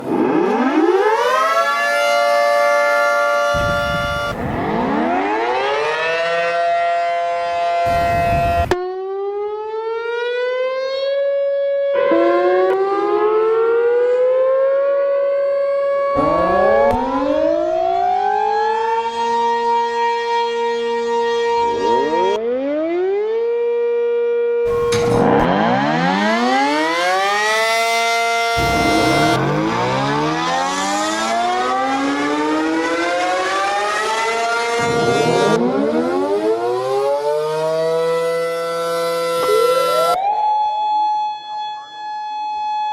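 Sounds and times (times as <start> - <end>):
outdoor warning sirens winding up: 0.0 - 42.9.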